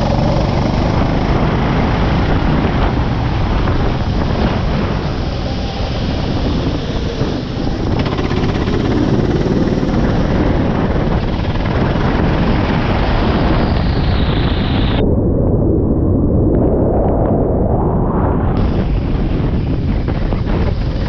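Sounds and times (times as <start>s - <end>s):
kart engine running: 0.0s - 13.6s
wind noise on microphone: 0.0s - 21.0s.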